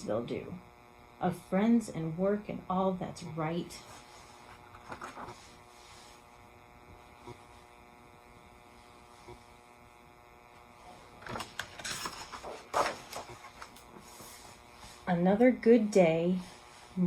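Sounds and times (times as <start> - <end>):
low electrical hum: 0.0 - 17.0
paper rustling and clicks: 11.2 - 13.9.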